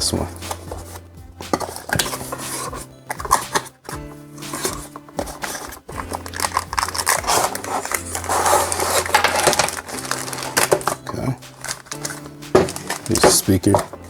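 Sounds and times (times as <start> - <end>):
cardboard packaging crinkling: 0.0 - 14.0
small clicks and scrapes: 4.4 - 14.0.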